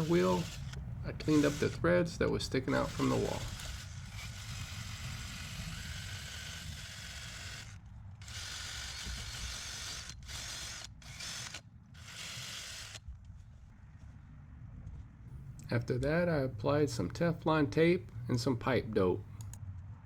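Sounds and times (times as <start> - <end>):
drill with wire brush on pipe: 0.0 - 13.0.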